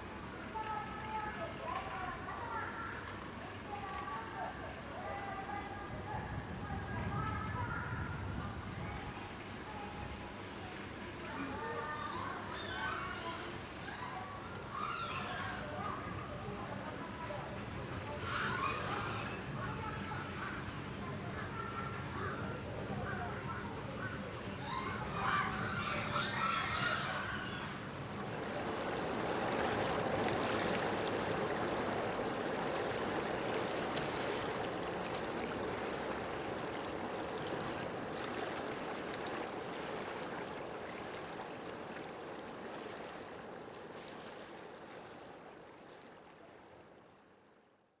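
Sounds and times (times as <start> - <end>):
running water rushing: 23.3 - 47.6.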